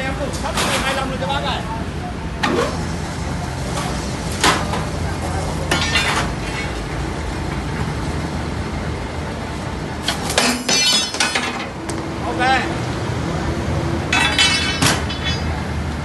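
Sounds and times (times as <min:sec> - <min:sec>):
sharp metallic clinks: 0:14.1 - 0:15.6
steel rattling: 0:14.1 - 0:15.7.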